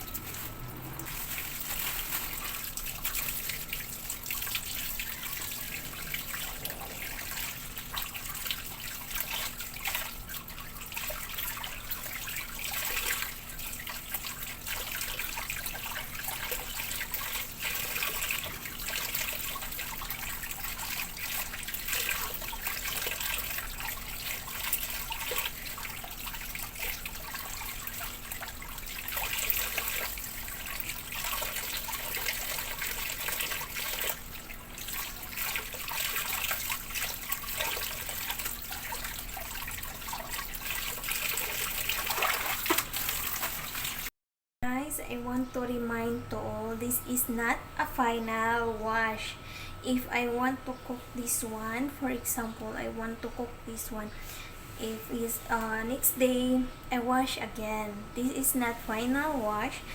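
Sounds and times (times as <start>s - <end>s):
tap water running and splashing: 0.0s - 44.1s.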